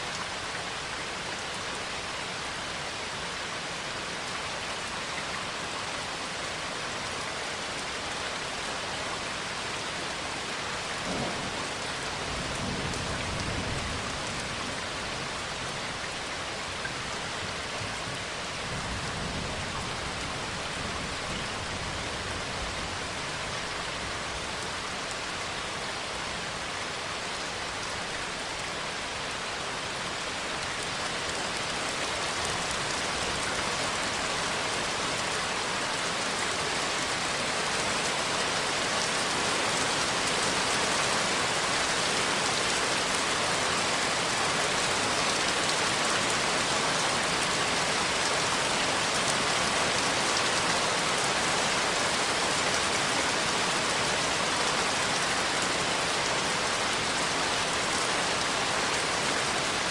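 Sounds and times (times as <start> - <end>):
steady rain: 0.0 - 59.9
low thunder rumbling: 11.0 - 15.0.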